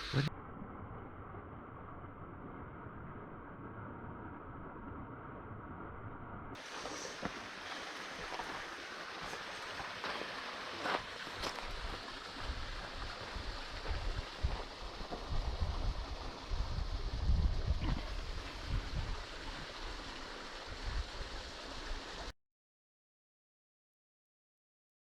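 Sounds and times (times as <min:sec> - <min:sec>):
creek water flowing: 0:06.6 - 0:22.3
wind rumbling on microphone: 0:11.5 - 0:22.2.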